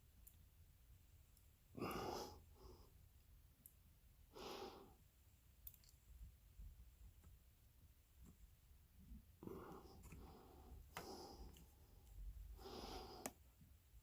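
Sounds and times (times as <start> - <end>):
person exhaling: 1.8 - 2.4.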